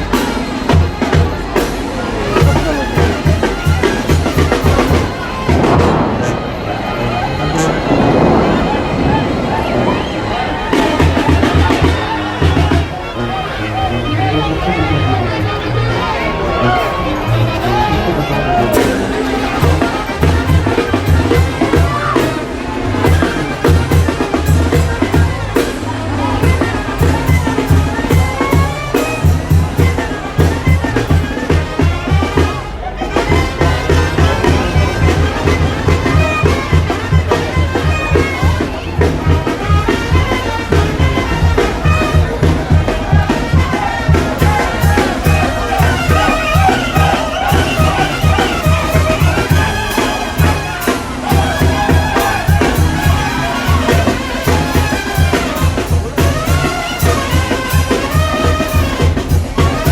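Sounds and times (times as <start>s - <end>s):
loud music with drums and bass: 0.0s - 6.3s, 18.7s - 32.6s, 33.2s - 59.9s.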